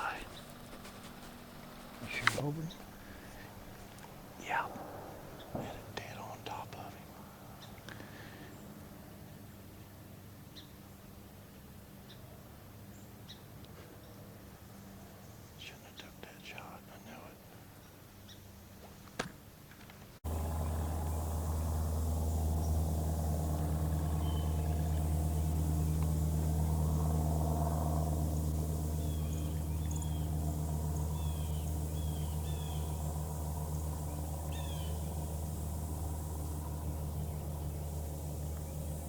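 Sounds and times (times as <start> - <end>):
low engine hum: 0.0 - 10.2, 20.2 - 39.0
bird chirps: 20.3 - 39.0.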